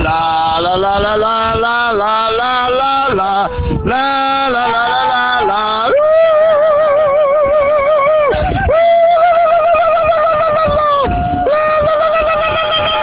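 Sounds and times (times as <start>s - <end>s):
person singing with vibrato: 0.0s - 13.0s
singer breathing: 3.5s - 3.9s.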